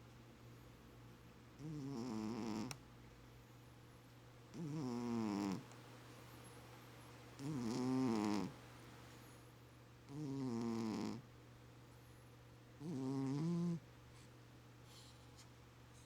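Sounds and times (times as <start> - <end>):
pet snoring: 1.6 - 2.8, 4.5 - 5.7, 7.4 - 8.6, 10.1 - 11.3, 12.8 - 13.8.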